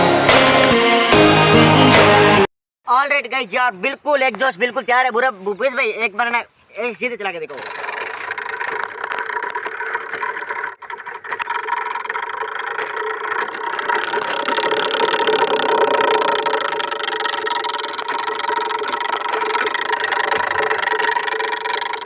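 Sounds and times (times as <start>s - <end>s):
bicycle exhaust buzzing: 7.5s - 22.0s.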